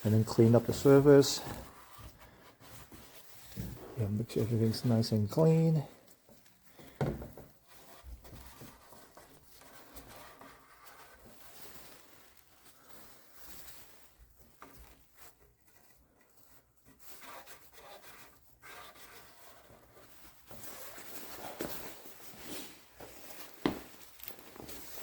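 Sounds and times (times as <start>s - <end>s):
hand rubbing and wiping surface: 0.0s - 6.6s, 7.6s - 25.0s.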